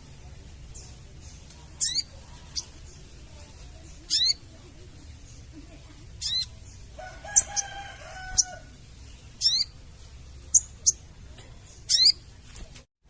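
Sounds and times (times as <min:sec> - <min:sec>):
bird harsh chatter: 0:00.6 - 0:11.1, 0:11.7 - 0:12.4
bird steady pitched call: 0:00.7 - 0:03.2, 0:03.9 - 0:04.5, 0:06.2 - 0:09.8, 0:11.7 - 0:12.3.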